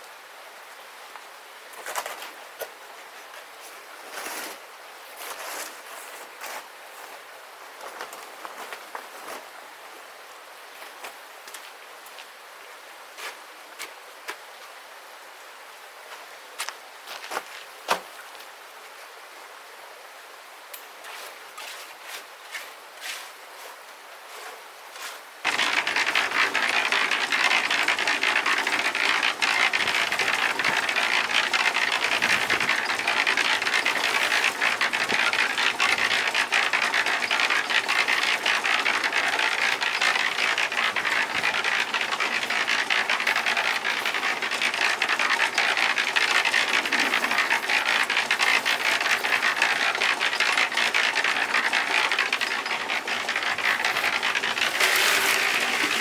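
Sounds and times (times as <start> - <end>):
dense mechanical rattling: 25.4 - 56.0.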